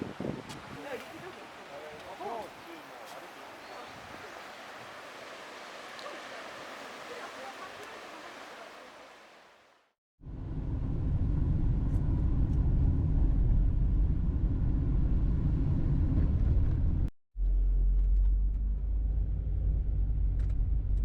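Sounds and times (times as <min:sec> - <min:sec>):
car road noise rumble: 0:10.3 - 0:21.0.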